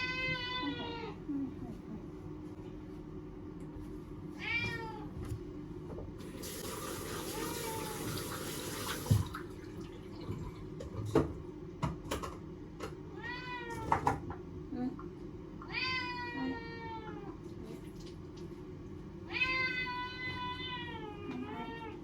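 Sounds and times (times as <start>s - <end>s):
cat meowing: 0.0s - 1.2s, 4.4s - 5.1s, 13.1s - 14.0s, 15.6s - 17.4s, 19.3s - 22.0s
rushing hiss of running water: 6.3s - 9.2s.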